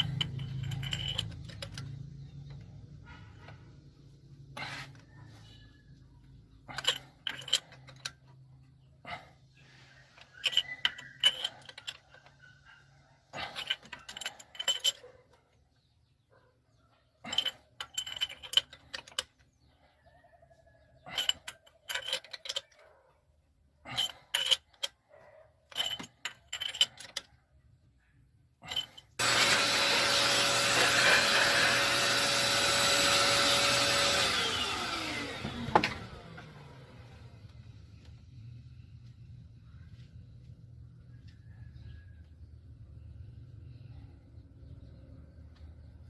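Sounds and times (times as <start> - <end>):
power tool motor whining: 29.2 - 37.5.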